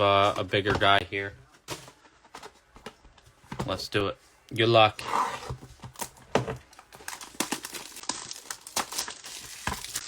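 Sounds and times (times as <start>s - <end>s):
plastic wrapper crinkling: 6.7s - 10.0s.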